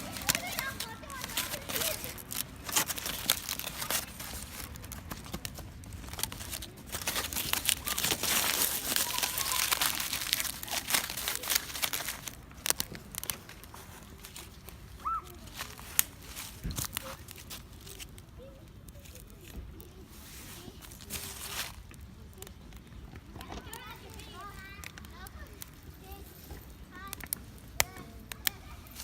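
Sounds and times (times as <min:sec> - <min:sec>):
crinkling and rustling handling: 0:00.0 - 0:29.0.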